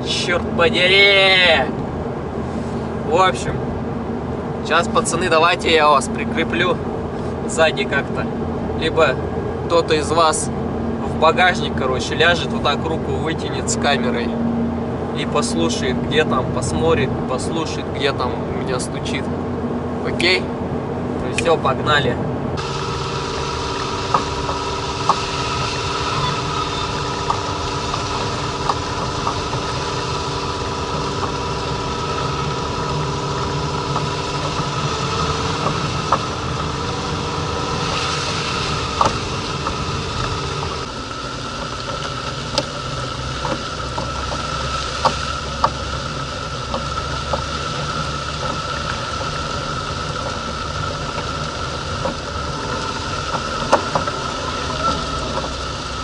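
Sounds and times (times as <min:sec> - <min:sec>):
car engine and road noise: 0:00.0 - 0:56.0
suspension knocking: 0:22.6 - 0:56.0.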